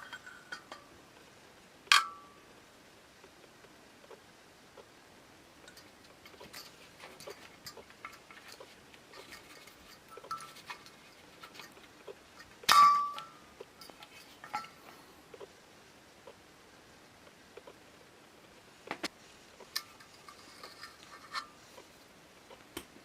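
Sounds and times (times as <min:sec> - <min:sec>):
ringing metal clink: 0:09.9 - 0:10.7, 0:12.7 - 0:13.9.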